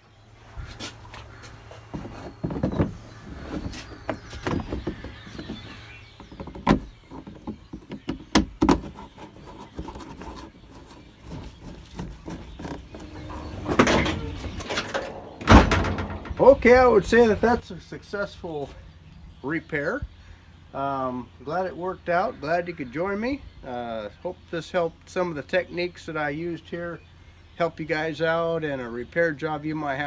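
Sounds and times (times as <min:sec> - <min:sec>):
loud thump: 0:15.4 - 0:16.4.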